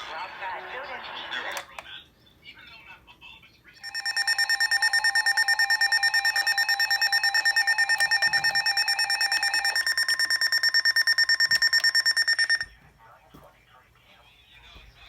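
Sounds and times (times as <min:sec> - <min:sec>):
rapid beeping alarm tone: 0:03.8 - 0:12.8.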